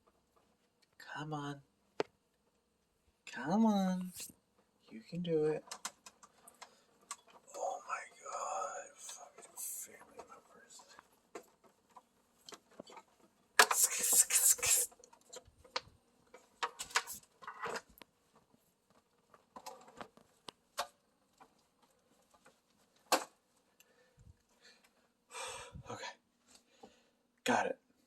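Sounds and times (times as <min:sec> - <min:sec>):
rustles clicks and knocks: 0:05.6 - 0:07.6, 0:09.2 - 0:13.9, 0:14.9 - 0:23.6
cables rattling and clattering: 0:15.0 - 0:23.4.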